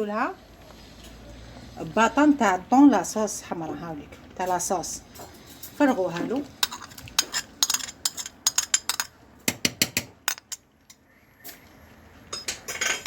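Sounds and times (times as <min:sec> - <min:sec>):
metal spoon clinking on a can: 0:06.6 - 0:09.1.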